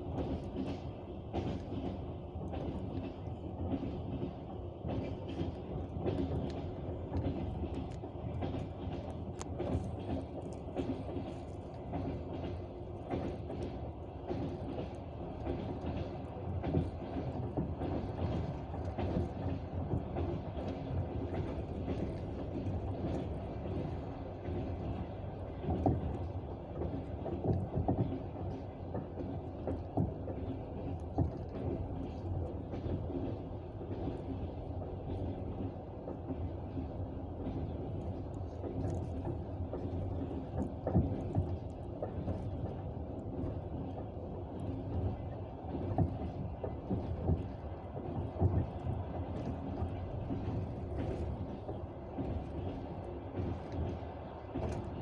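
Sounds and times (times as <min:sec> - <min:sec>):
train rumble inside carriage: 0:00.0 - 0:55.0.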